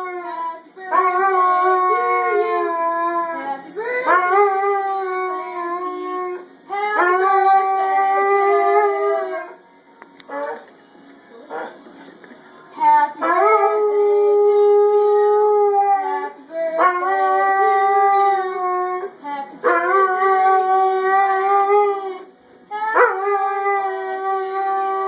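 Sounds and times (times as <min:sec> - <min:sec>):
dog howling: 0:00.9 - 0:06.4.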